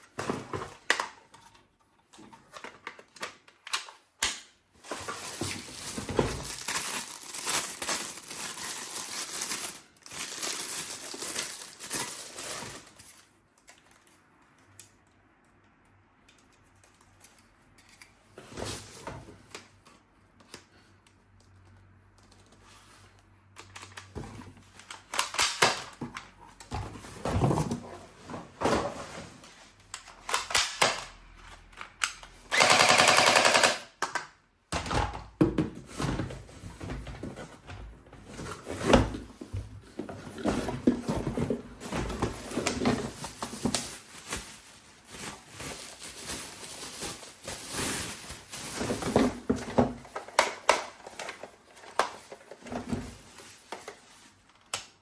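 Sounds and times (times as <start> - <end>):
packaging crinkling and tearing: 5.0 - 13.1, 40.4 - 55.0.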